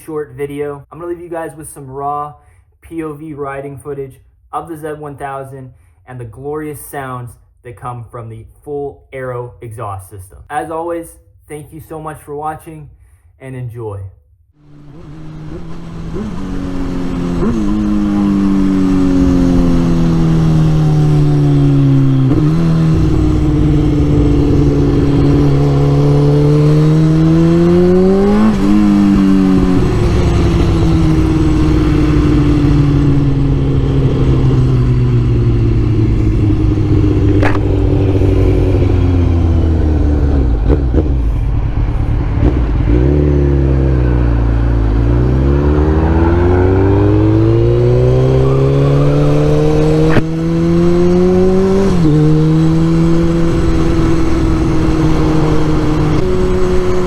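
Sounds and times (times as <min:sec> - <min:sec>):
motorcycle engine revving: 0:14.6 - 0:57.0.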